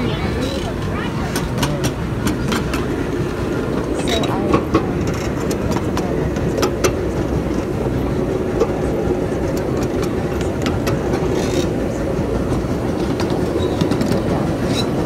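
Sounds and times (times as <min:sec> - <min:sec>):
miniature train rumbling: 0:00.0 - 0:15.0
wheels clicking over rail joints: 0:00.0 - 0:15.0.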